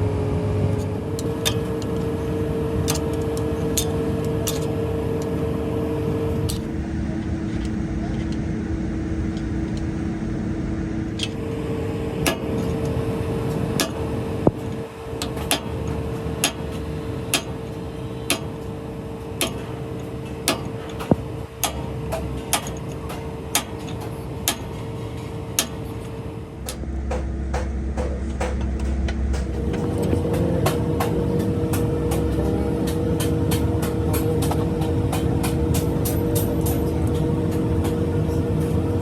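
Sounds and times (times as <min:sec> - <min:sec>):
machine hum: 0:00.0 - 0:39.0
sharp knocks: 0:26.6 - 0:36.8.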